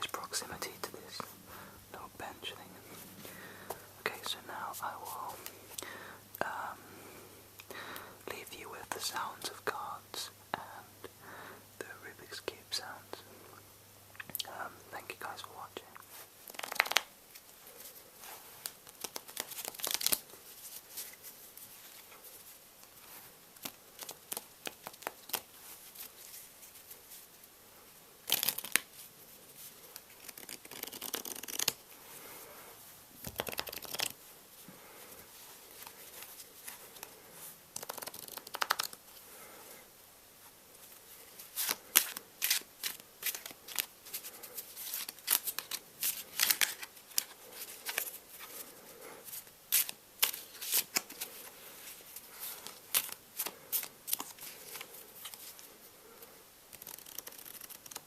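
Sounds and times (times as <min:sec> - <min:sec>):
playing cards shuffling: 0:16.1 - 0:27.3, 0:28.2 - 0:31.8, 0:33.2 - 0:34.2, 0:35.4 - 0:39.0, 0:40.8 - 0:55.7, 0:56.7 - 0:58.0.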